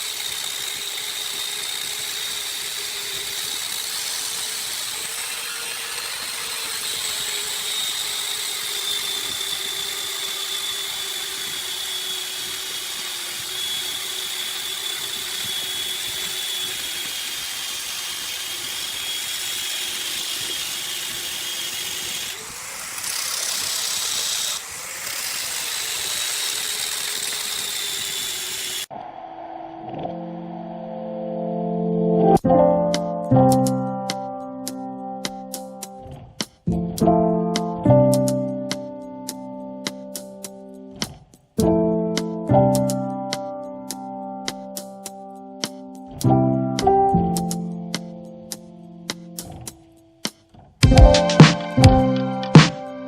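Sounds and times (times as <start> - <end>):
electric power tool whining: 0.0 - 28.9
piano music: 30.1 - 41.0, 41.6 - 49.8, 50.8 - 53.0.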